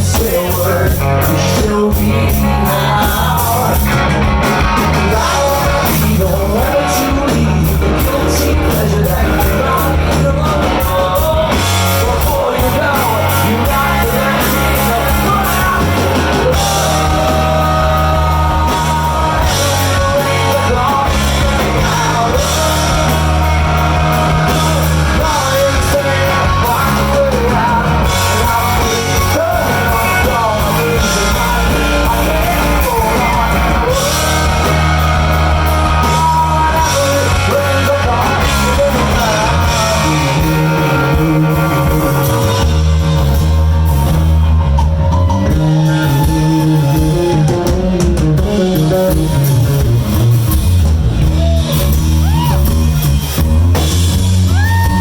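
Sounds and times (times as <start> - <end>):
person singing: 0.0 - 49.9, 54.4 - 55.0
bass guitar: 0.0 - 55.0
drum kit: 0.0 - 55.0
electric guitar: 0.0 - 55.0.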